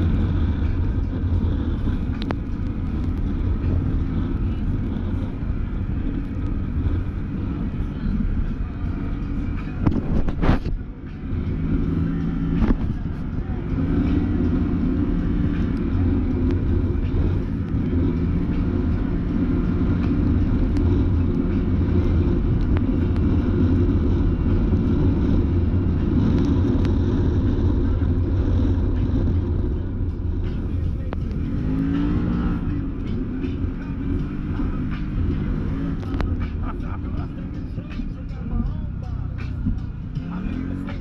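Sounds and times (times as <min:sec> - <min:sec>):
off-road vehicle engine running: 0:00.0 - 0:41.0.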